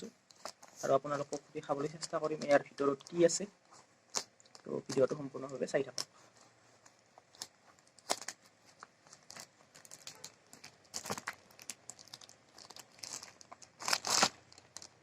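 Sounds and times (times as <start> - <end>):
packaging torn and crinkled: 7.3 - 15.0.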